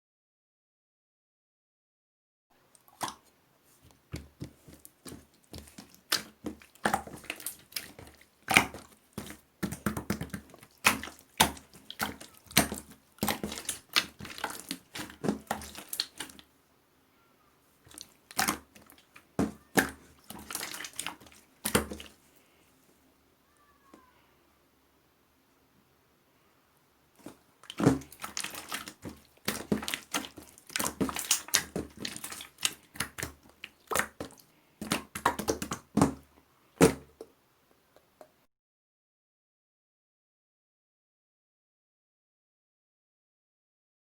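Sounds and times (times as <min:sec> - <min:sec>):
slime squished by hand: 0:04.2 - 0:16.4, 0:17.9 - 0:22.2, 0:27.2 - 0:37.2.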